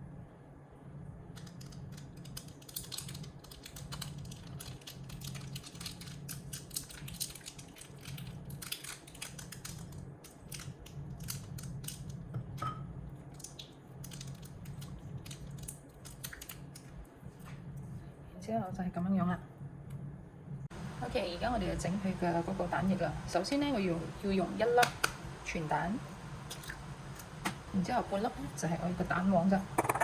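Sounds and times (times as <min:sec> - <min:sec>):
low hum: 0:10.0 - 0:30.0.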